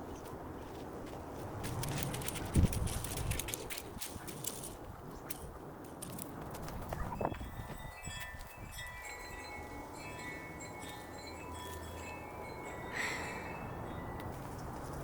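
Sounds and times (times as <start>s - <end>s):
wind chimes ringing: 7.1s - 15.0s.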